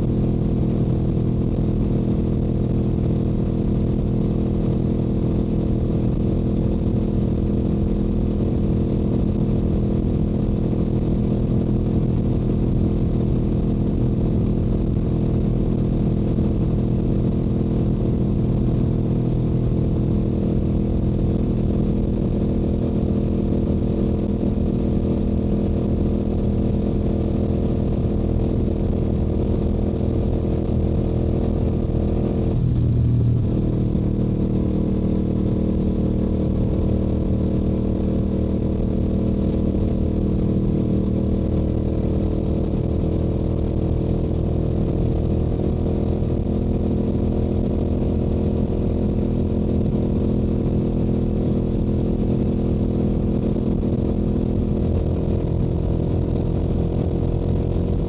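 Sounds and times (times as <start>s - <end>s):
motorcycle engine cruising: 0.0s - 58.0s.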